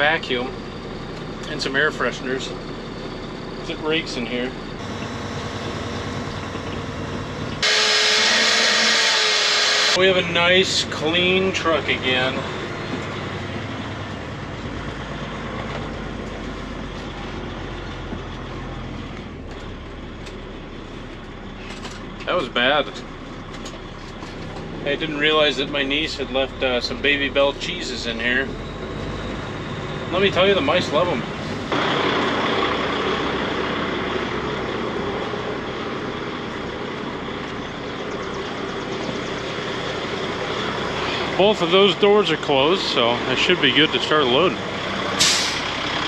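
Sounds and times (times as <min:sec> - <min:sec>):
diesel truck engine idling: 0:00.0 - 0:46.0.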